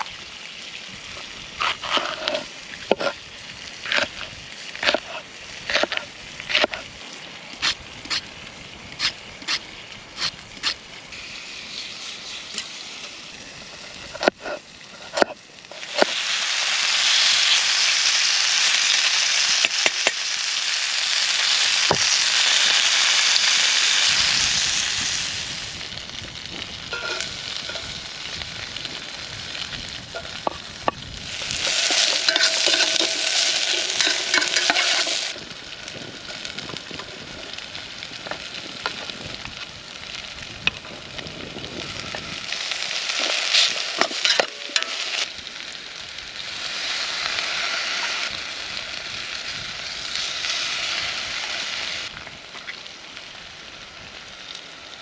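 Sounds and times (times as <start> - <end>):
food sizzling in a pan: 0.0 - 40.6, 41.2 - 55.0.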